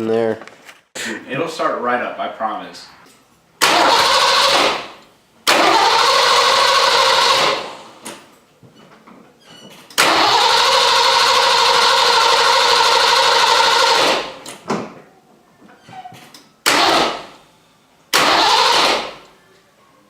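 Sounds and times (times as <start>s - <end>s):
car starter cranking engine: 3.6s - 8.1s, 9.9s - 14.5s, 16.6s - 17.4s, 18.1s - 19.3s.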